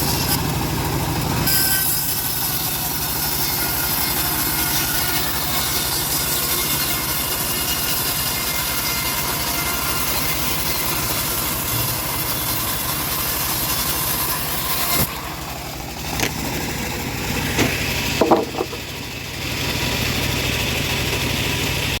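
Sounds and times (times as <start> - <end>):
bandsaw cutting wood: 0.0 - 21.4
short knocks: 17.5 - 18.9.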